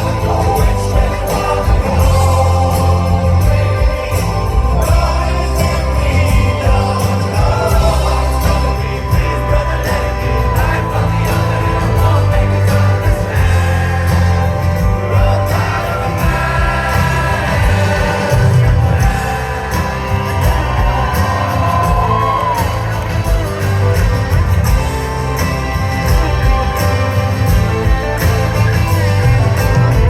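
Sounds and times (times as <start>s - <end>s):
person singing: 0.0s - 23.6s
live rock band playing: 0.0s - 30.0s.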